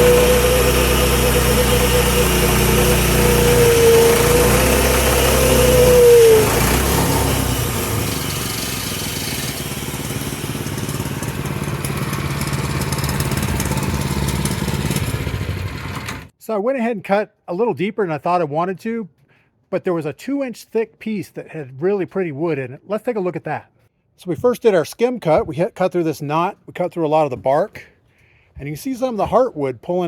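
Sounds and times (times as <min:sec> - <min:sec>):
band sawmill cutting a log: 0:00.0 - 0:16.3
gas engine running: 0:00.0 - 0:16.3.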